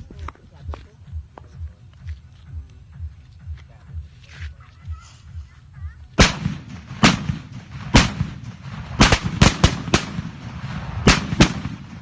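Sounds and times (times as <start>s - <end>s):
firecrackers exploding: 6.2s - 12.0s.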